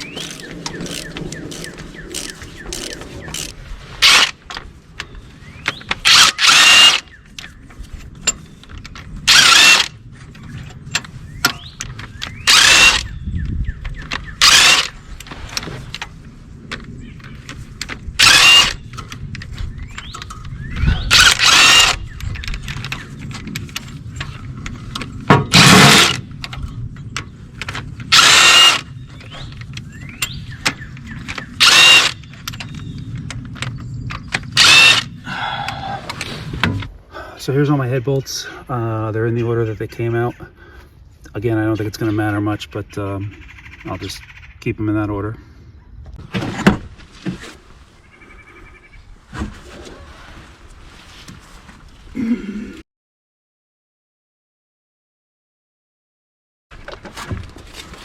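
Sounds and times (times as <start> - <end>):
power drill whining: 0.0 - 4.4, 6.0 - 7.1, 9.3 - 9.9, 12.4 - 13.1, 14.4 - 15.0, 18.2 - 18.8, 21.1 - 22.0, 25.5 - 26.2, 28.1 - 28.9, 31.6 - 32.2, 34.6 - 35.9.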